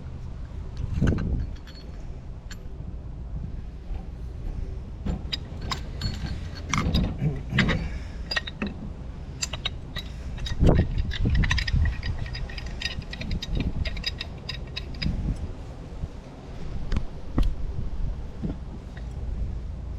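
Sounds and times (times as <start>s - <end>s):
metal tools clinking and knocking: 1.0s - 2.7s, 4.2s - 15.4s
sharp metallic clicks: 9.4s - 15.2s.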